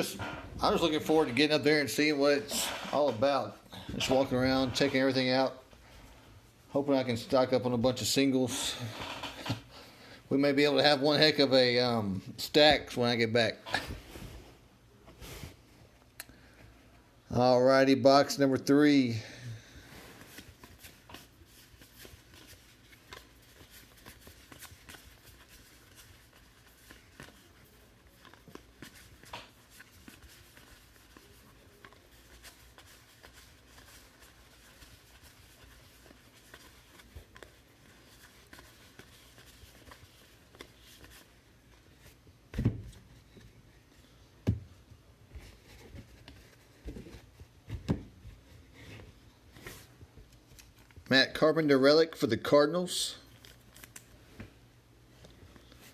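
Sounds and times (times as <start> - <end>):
cards rustling: 20.2 - 42.3, 53.2 - 54.3.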